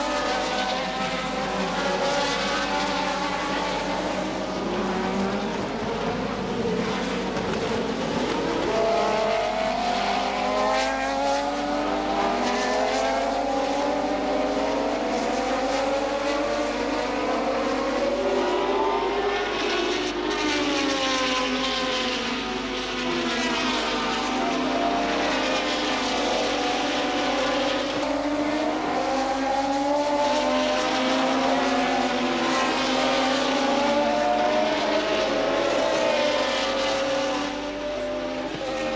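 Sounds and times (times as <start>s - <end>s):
racing car engines passing by: 0.0s - 38.9s.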